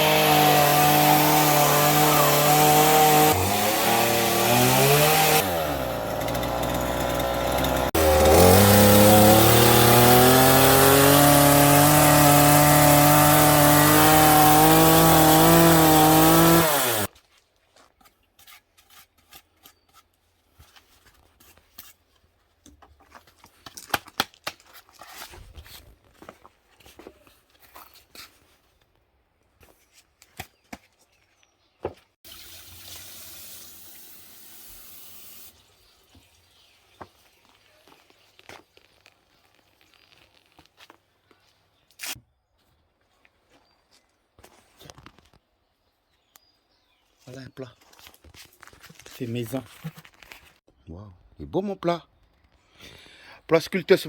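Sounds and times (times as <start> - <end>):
chainsaw cutting wood: 0.0 - 17.1.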